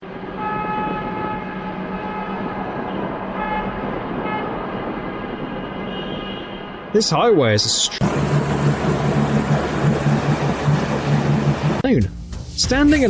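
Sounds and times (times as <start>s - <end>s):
engine and traffic rumble: 7.0s - 13.0s.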